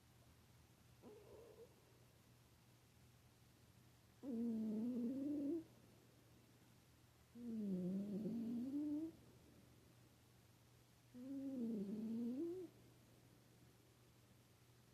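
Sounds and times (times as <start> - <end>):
cat snoring: 1.0 - 1.7, 4.2 - 5.7, 7.4 - 9.2, 11.2 - 12.7.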